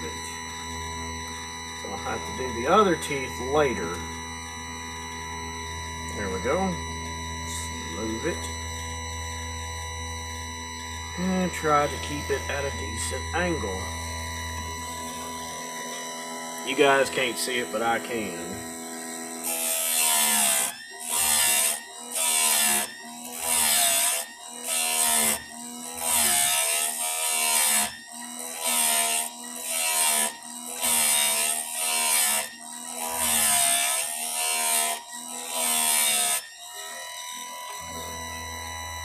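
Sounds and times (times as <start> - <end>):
motor humming: 0.0 - 39.0
grinding wheel on chain: 19.3 - 38.8.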